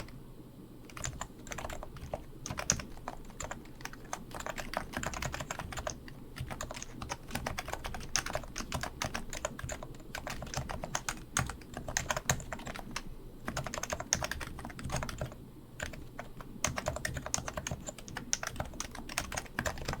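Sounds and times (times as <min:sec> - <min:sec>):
keyboard typing: 0:00.8 - 0:20.0.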